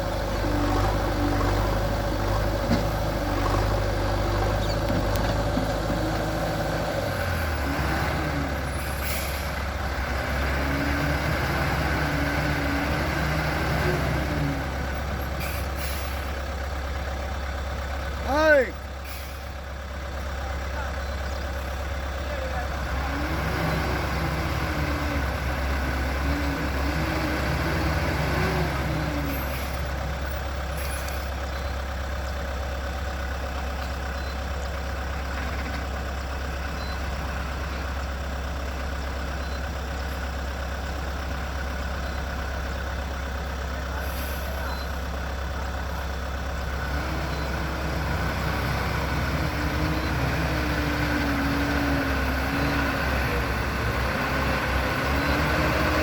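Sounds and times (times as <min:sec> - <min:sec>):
hydraulics whining: 0:00.0 - 0:32.4, 0:45.9 - 0:56.0
diesel engine running: 0:00.0 - 0:56.0.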